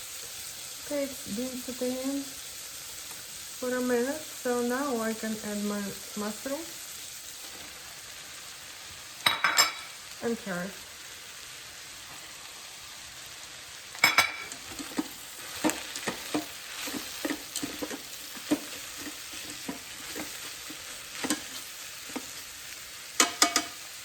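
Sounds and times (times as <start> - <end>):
vegetables sizzling in oil: 0.0 - 24.0
utensil scraping metal pot: 14.0 - 22.4.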